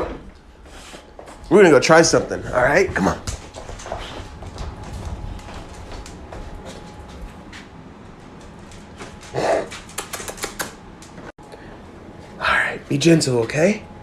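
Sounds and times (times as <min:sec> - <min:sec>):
dog claws clicking on floor: 0:02.9 - 0:07.2, 0:08.4 - 0:11.2.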